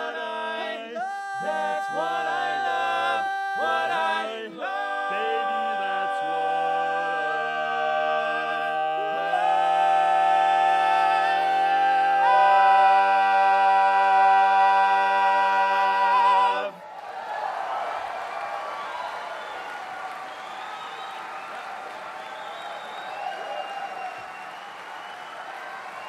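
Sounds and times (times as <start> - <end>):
male quartet singing a cappella: 0.0 - 16.8.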